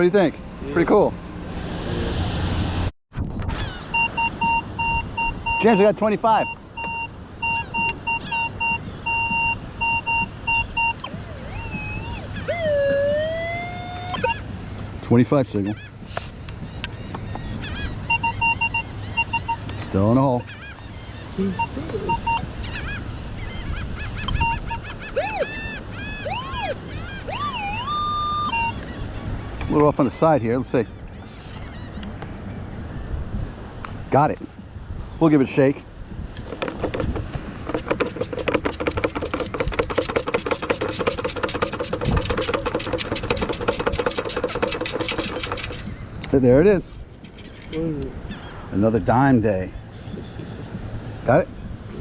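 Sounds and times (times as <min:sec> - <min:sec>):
gulls calling: 0:03.5 - 0:14.6, 0:15.4 - 0:33.0, 0:36.4 - 0:52.0
metal detector beeps: 0:03.9 - 0:13.1, 0:14.1 - 0:14.4, 0:18.1 - 0:19.8, 0:21.6 - 0:22.4, 0:27.5 - 0:28.8
shells and grit rattling in scoop: 0:36.4 - 0:45.9.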